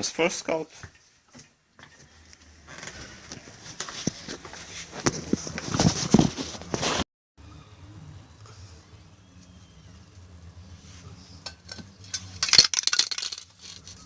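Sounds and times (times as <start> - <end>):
spray can knocking and rattling: 12.4 - 13.8.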